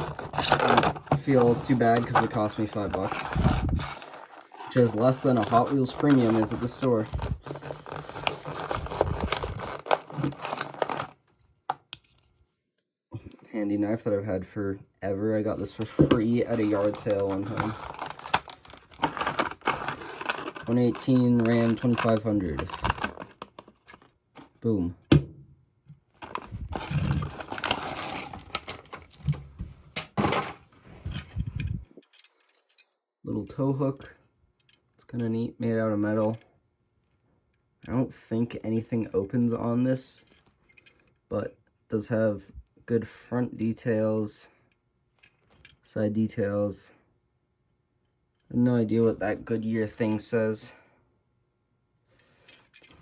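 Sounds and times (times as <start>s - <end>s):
plastic packaging crinkling: 0.0s - 11.2s, 15.8s - 24.5s, 26.2s - 29.4s.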